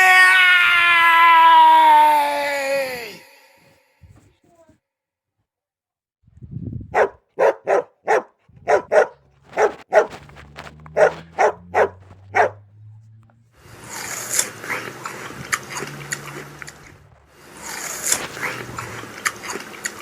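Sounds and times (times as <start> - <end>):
dog barking: 6.9 - 10.2, 10.9 - 13.0
scratchy scuffling with clicks: 8.2 - 20.0.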